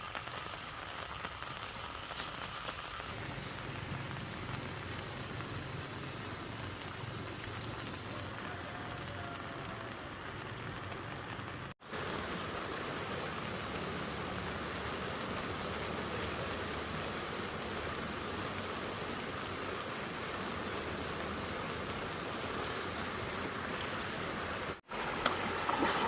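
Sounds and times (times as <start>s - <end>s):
faint raindrop ticks: 0.0s - 11.7s
steady rain falling: 0.0s - 26.0s.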